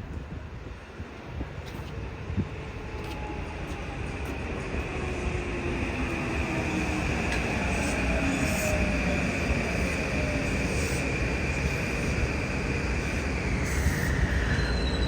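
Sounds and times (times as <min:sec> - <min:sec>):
train wheels on rail: 0:00.0 - 0:15.0.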